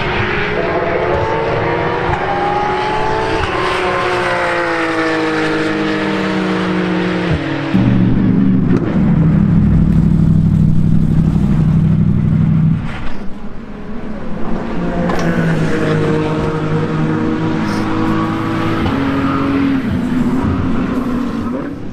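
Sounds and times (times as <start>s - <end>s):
engine shifting gears: 0.0s - 13.6s, 14.3s - 21.9s
race car engine roaring: 0.0s - 21.9s
sharp exhaust cracks: 7.7s - 13.3s.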